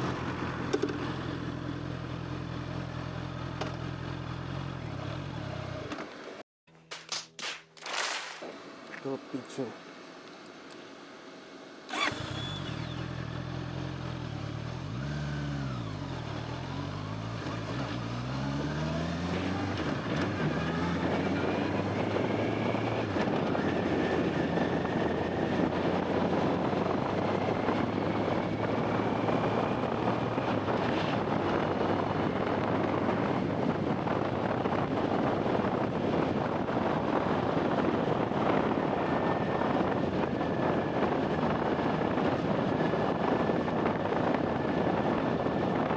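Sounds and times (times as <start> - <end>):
motorcycle engine revving: 0.0 - 6.0, 11.9 - 36.7
wind noise on microphone: 21.0 - 45.9.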